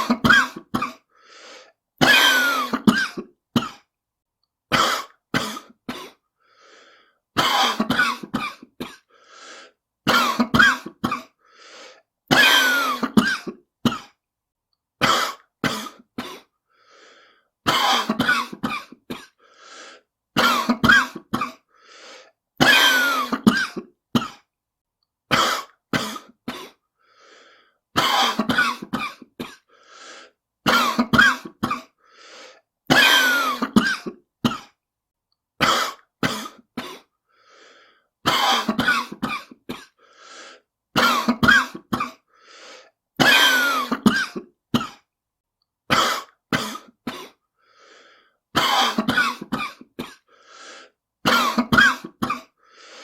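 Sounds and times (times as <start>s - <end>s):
person coughing: 0.0s - 1.1s, 2.0s - 3.9s, 4.7s - 6.2s, 7.4s - 9.2s, 10.0s - 11.4s, 12.3s - 14.2s, 15.0s - 16.6s, 17.6s - 19.4s, 20.4s - 21.7s, 22.6s - 24.5s, 25.3s - 26.8s, 28.0s - 29.8s, 30.6s - 32.0s, 32.9s - 34.8s, 35.6s - 37.1s, 38.2s - 40.0s, 41.0s - 42.3s, 43.2s - 45.1s, 45.9s - 47.4s, 48.6s - 50.3s, 51.2s - 52.6s.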